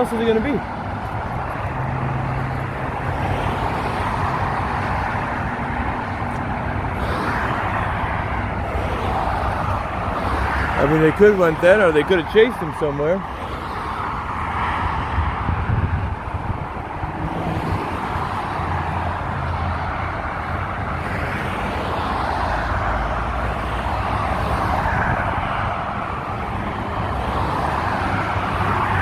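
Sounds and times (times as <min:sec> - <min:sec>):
low traffic rumble: 0:00.0 - 0:29.0
passing cars rushing: 0:00.0 - 0:29.0.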